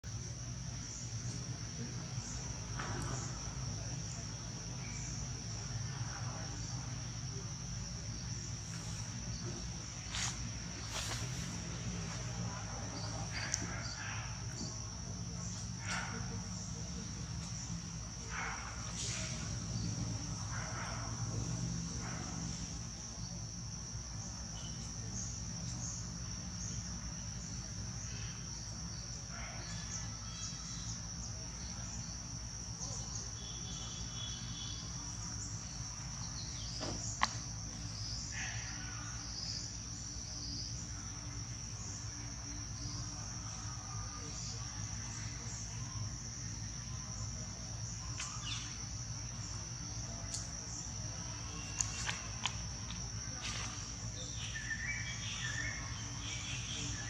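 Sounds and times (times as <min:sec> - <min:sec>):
insects droning: 0:00.0 - 0:57.0
faint chirps: 0:24.2 - 0:57.0.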